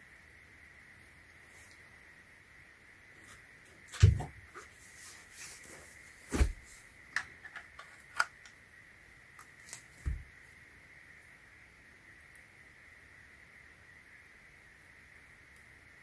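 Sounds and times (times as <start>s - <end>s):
soft handling thumps: 5.6s - 6.8s, 10.0s - 10.3s.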